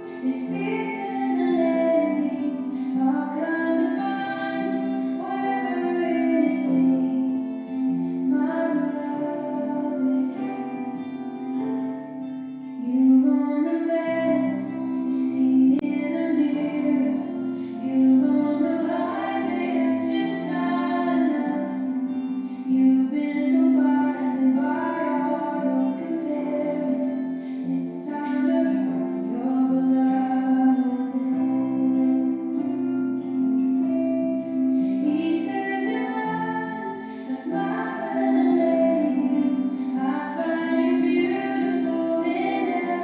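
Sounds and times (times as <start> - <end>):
person singing: 0.0 - 43.0
plucked strings: 0.0 - 43.0.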